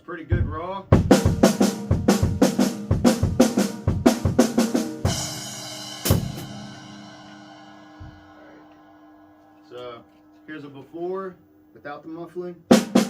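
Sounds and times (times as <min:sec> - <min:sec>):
drum kit groove: 0:00.0 - 0:11.0, 0:12.1 - 0:13.0
cymbal crash: 0:04.9 - 0:11.0.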